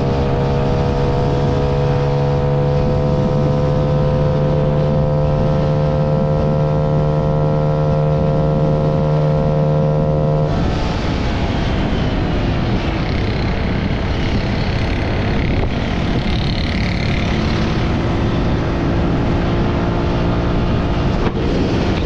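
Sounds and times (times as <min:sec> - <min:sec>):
wind noise on microphone: 0:00.0 - 0:22.0
scooter engine running: 0:12.7 - 0:18.6.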